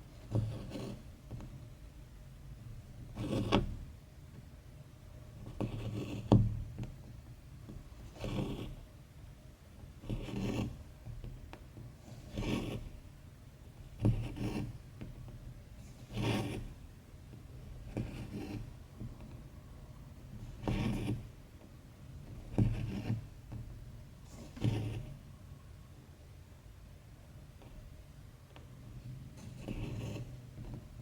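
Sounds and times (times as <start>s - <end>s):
thread rasping through fabric: 10.0s - 13.0s, 17.6s - 19.6s, 20.2s - 21.4s, 22.3s - 25.2s, 29.3s - 31.0s.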